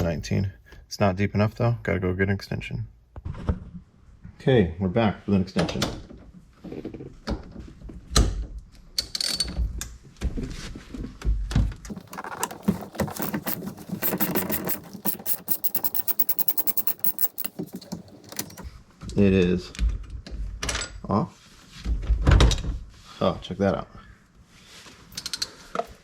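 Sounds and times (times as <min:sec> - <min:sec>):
ratchet clicking: 0:11.9 - 0:18.7
wrench knocks and clunks: 0:11.9 - 0:18.7.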